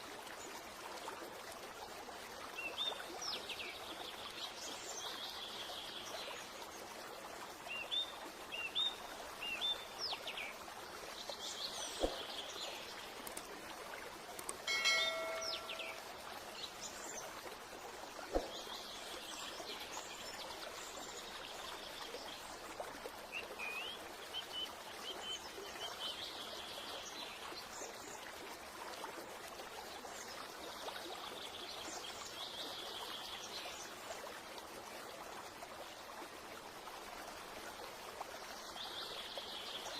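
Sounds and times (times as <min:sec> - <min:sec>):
running water rushing: 0:00.0 - 0:39.9
birds chirping: 0:14.7 - 0:16.1
ringing chime tone: 0:14.7 - 0:16.1.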